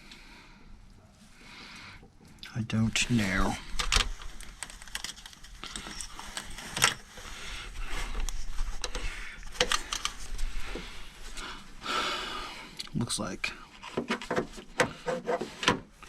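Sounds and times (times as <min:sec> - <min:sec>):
light clicks and clinks: 0:03.8 - 0:07.0.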